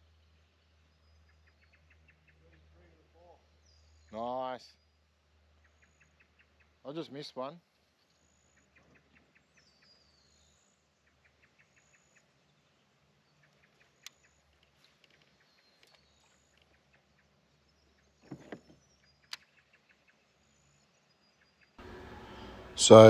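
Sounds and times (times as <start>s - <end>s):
birds calling in whistled notes: 0.0s - 23.0s
brief rustle: 13.8s - 16.8s, 18.2s - 19.5s.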